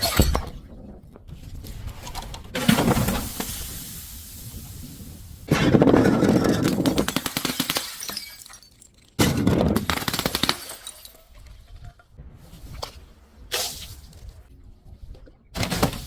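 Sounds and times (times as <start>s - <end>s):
glass bottle breaking and crunching: 5.5s - 11.5s.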